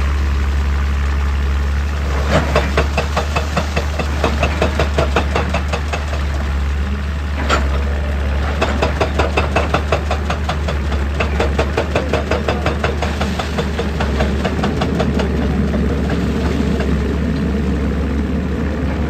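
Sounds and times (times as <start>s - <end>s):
diesel engine drone: 0.0s - 19.0s
hydraulic breaker hammering rock: 2.1s - 6.5s, 8.4s - 16.2s.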